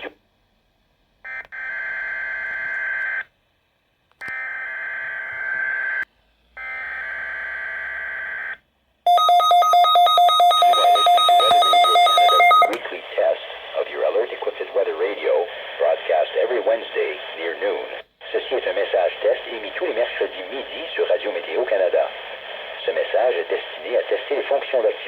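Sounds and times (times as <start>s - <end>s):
pulsed electronic alarm beeping: 9.1s - 12.8s.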